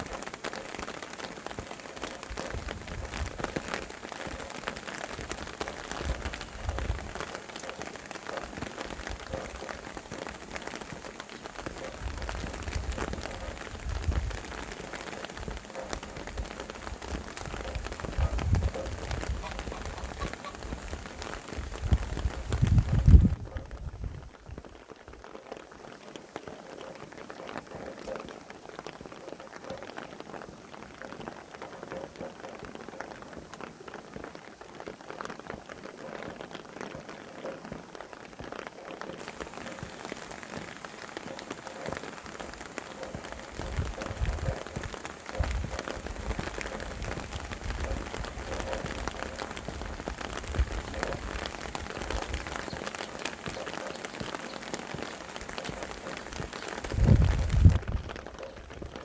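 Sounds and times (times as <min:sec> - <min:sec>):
wind gusts rumbling: 0:00.0 - 0:25.2, 0:39.2 - 0:59.0
rain pattering: 0:00.0 - 0:59.0.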